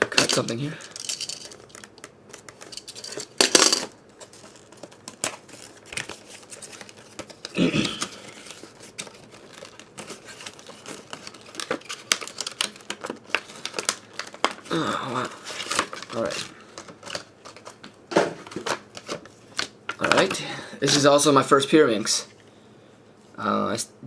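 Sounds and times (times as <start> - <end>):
plastic packaging crinkling: 0.2 - 20.1
packaging ripping: 4.2 - 17.8.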